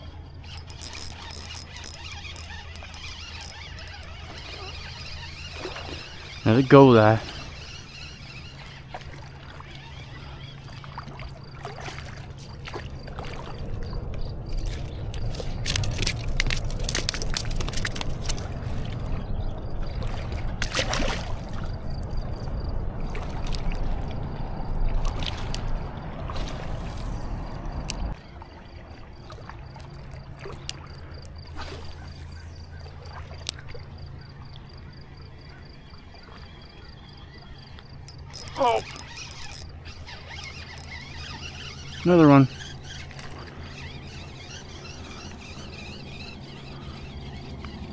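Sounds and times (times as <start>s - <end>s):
water sloshing and splashing: 0.0s - 35.1s, 37.7s - 47.9s
fishing tackle clicks and rattles: 0.4s - 5.2s, 14.5s - 18.5s, 38.0s - 43.4s.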